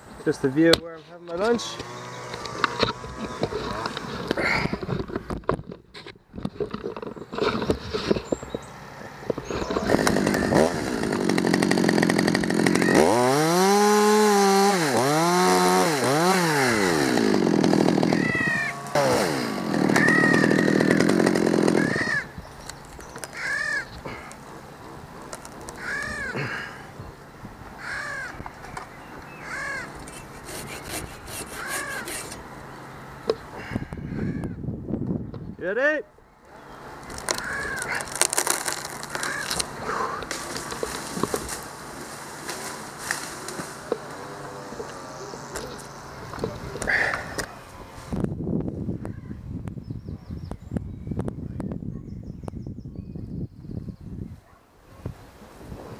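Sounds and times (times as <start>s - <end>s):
chainsaw running and cutting: 1.4s - 4.6s, 8.9s - 22.3s, 30.4s - 32.4s, 37.2s - 45.9s
short high rising-and-falling calls: 18.1s - 21.1s.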